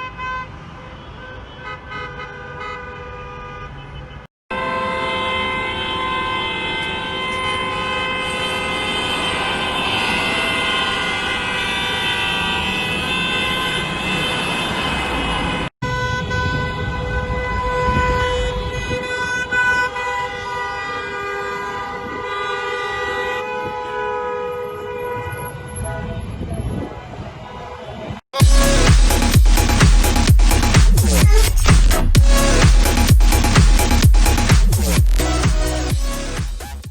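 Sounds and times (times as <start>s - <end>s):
car horns honking: 0.0s - 26.4s.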